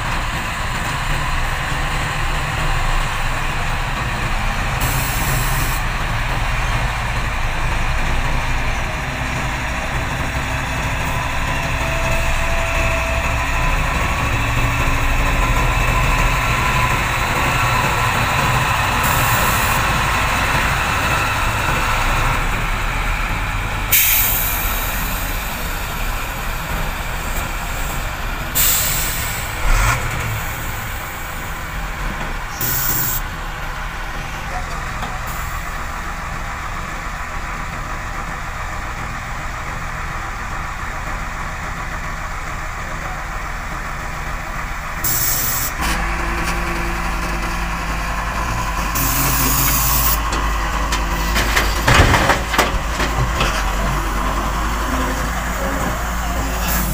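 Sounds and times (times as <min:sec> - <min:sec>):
heavy diesel engines running: 0:00.0 - 0:56.9
truck air brakes hissing: 0:04.3 - 0:06.3, 0:10.4 - 0:22.8, 0:23.9 - 0:34.5, 0:44.8 - 0:56.9.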